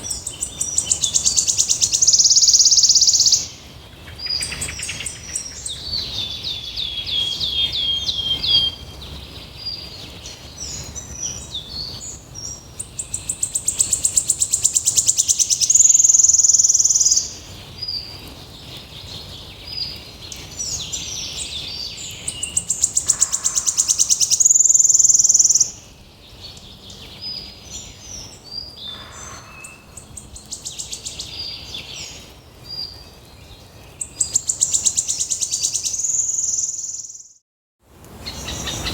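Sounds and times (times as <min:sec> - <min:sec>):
rapid pulsed bird trills: 0:00.0 - 0:03.6, 0:10.6 - 0:17.4, 0:20.6 - 0:25.9, 0:26.5 - 0:32.2
birds chirping: 0:00.0 - 0:37.4, 0:38.2 - 0:38.9.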